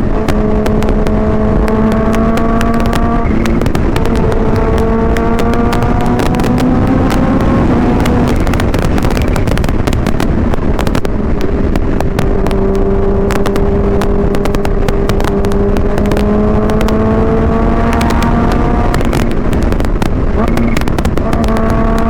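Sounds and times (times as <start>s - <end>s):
motorcycle engine running: 0.0s - 22.0s
sharp exhaust crackles: 0.0s - 22.0s
wind buffeting microphone: 0.0s - 22.0s.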